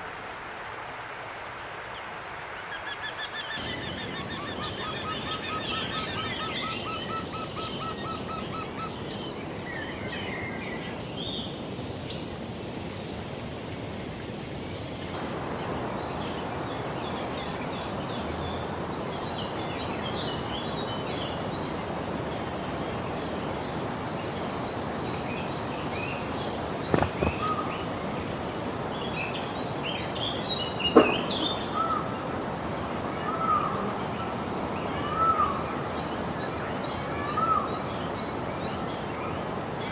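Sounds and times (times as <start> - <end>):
background hiss: 0.0 - 39.9
wild birds chirping and calling: 2.6 - 9.9, 26.6 - 38.1.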